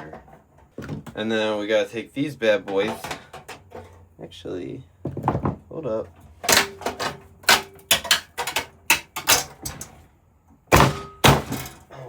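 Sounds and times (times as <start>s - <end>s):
sheet metal knocks and clanks: 6.4s - 10.0s, 10.7s - 11.9s.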